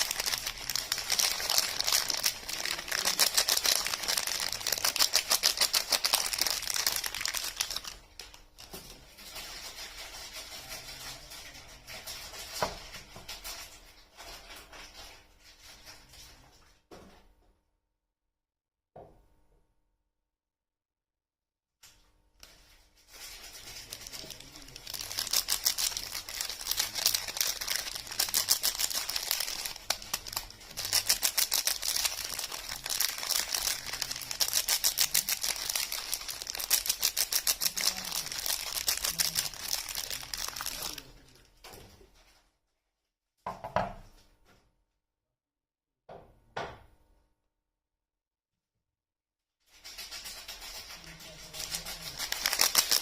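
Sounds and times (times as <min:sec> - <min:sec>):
packaging crackling: 0:00.0 - 0:08.7, 0:23.1 - 0:41.1, 0:51.6 - 0:53.0
packaging rustles: 0:00.0 - 0:10.1, 0:22.4 - 0:41.4, 0:51.5 - 0:53.0.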